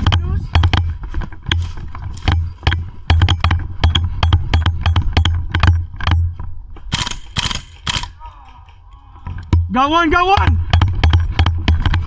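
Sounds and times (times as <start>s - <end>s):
gear clicking and rattling: 0.0s - 9.8s, 10.4s - 12.0s
heavy running footsteps: 0.0s - 9.8s
loud sharp noises: 6.9s - 9.6s.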